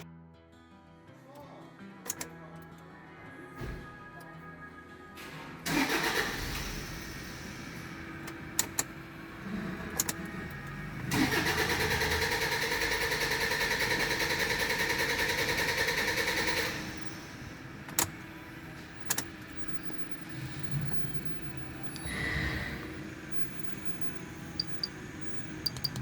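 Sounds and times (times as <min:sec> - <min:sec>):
diesel engine idling: 0:05.7 - 0:26.0
sharp clicks or knocks: 0:23.7 - 0:26.0.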